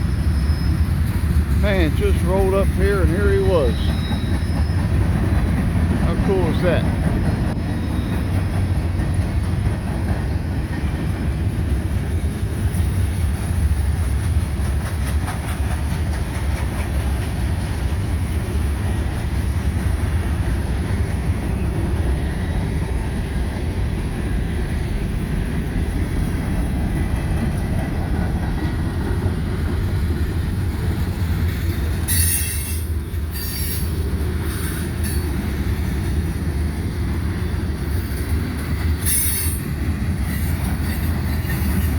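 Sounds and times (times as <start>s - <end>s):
train wheels rumbling on rail: 0.0s - 41.9s
high wheel squeal: 0.1s - 1.1s, 3.1s - 5.2s, 7.7s - 8.5s, 32.1s - 35.4s, 38.9s - 41.9s.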